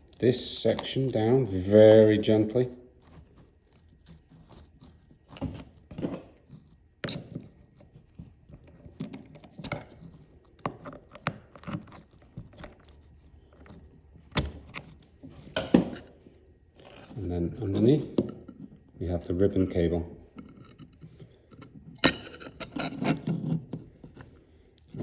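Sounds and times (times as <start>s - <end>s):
plastic casing clicks and scrapes: 2.9s - 16.1s, 20.3s - 25.0s.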